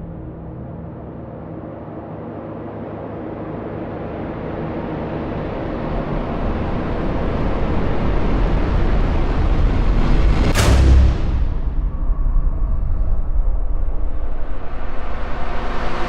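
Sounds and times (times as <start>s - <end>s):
rumbling riser: 6.7s - 16.0s.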